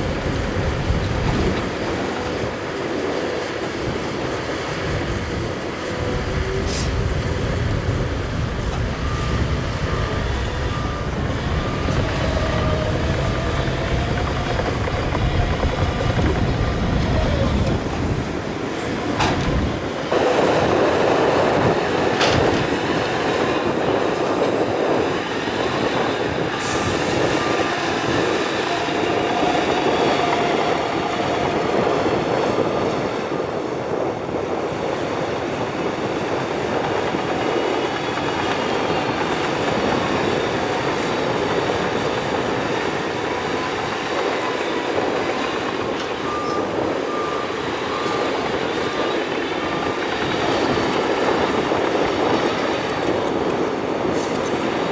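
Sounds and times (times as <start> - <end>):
bulldozer engine under load: 0.0 - 54.9
steel tracks clanking and squealing: 0.0 - 54.9
reversing alarm beeps: 8.0 - 16.6, 26.7 - 32.0, 43.4 - 51.8.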